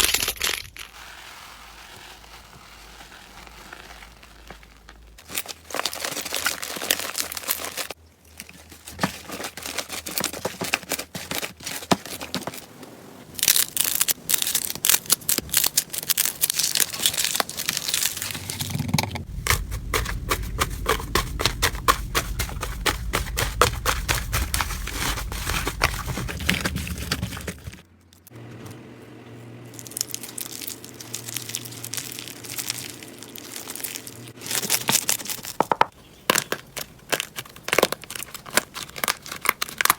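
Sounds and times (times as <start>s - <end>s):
slime crackling and popping: 13.4s - 27.1s, 29.7s - 35.7s.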